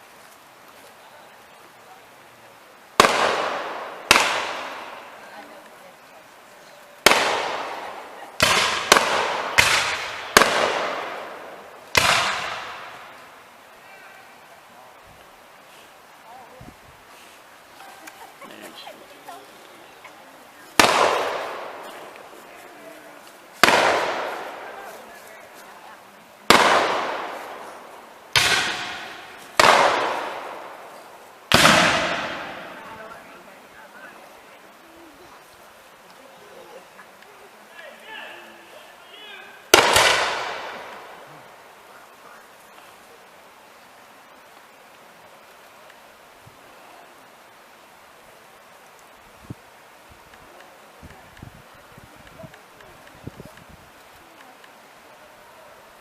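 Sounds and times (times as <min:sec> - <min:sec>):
musket shots echoing: 0:03.0 - 0:05.0, 0:07.0 - 0:13.2, 0:20.8 - 0:22.2, 0:23.6 - 0:24.7, 0:26.5 - 0:30.9, 0:31.5 - 0:33.0, 0:39.7 - 0:41.2.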